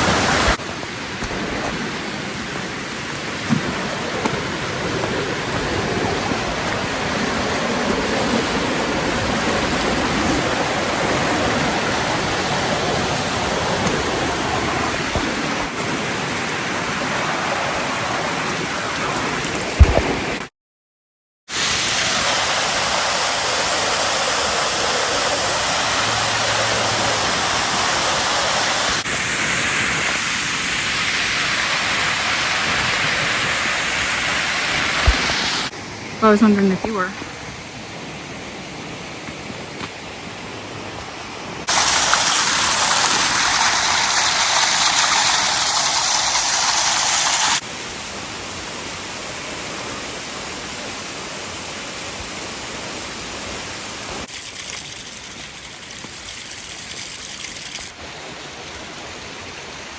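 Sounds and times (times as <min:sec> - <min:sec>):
waterfall pouring: 0:00.0 - 0:20.4, 0:21.5 - 0:35.7, 0:41.6 - 0:47.7, 0:54.1 - 0:58.0.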